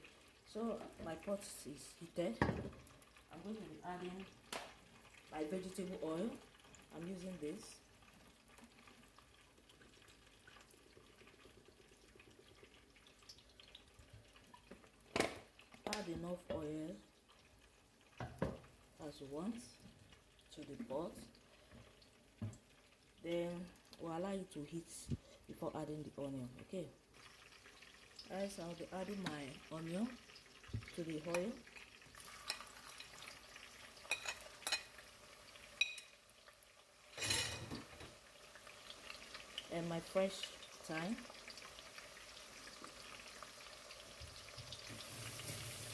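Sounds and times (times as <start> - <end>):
oil trickling into a pot: 6.1 - 16.0, 17.0 - 19.0, 27.0 - 45.9
small drips: 6.1 - 16.1, 16.7 - 24.1, 26.8 - 45.9
metal spoon clinking on pot: 34.1 - 34.9, 35.8 - 36.1.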